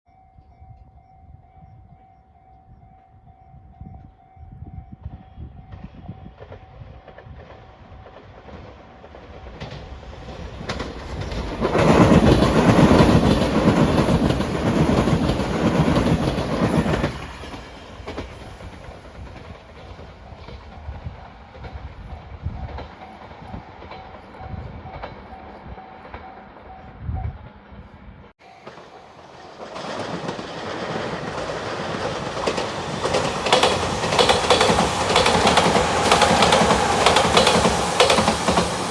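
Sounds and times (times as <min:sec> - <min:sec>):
train approaching: 0:00.1 - 0:38.9
train wheels clattering: 0:05.7 - 0:26.5, 0:28.5 - 0:38.9
level crossing warning bell: 0:28.4 - 0:29.6.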